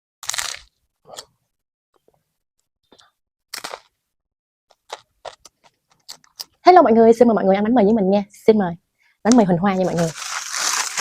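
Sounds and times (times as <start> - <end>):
crackling handling noises: 9.3 - 11.0.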